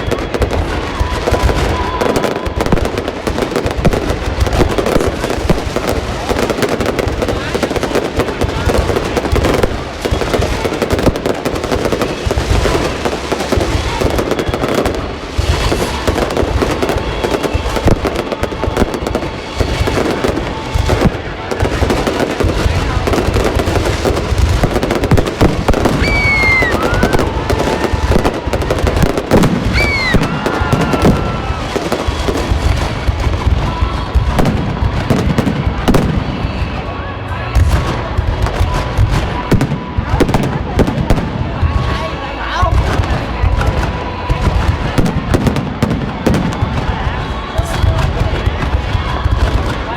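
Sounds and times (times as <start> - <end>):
falling firework whistles: 0.0 - 36.8
fireworks bangs and crackling: 0.0 - 49.9.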